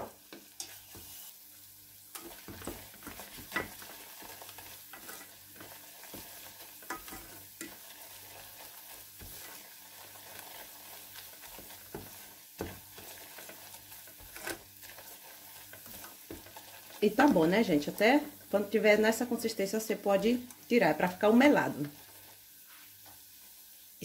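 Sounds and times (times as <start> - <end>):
spoon tapping and scraping pan: 0.0 - 1.2, 2.1 - 19.0
syrup sizzling in a pan: 0.0 - 24.0.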